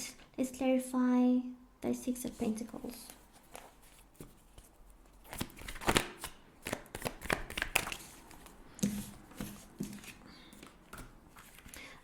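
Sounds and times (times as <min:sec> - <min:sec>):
cards being shuffled: 0:03.0 - 0:11.8.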